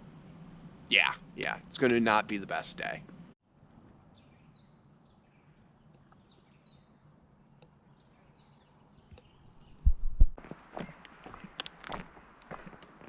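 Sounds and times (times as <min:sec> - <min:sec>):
faint bird chirps: 0:04.1 - 0:11.6.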